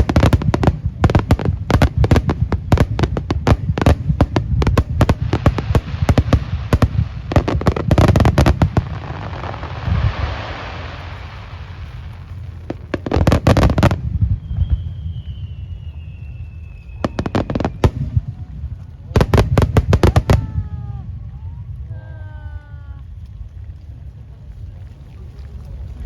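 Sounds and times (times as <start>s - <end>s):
fireworks bangs: 0.0s - 21.8s
fireworks crackling hiss: 0.0s - 25.6s
descending firework whistle: 4.8s - 18.5s.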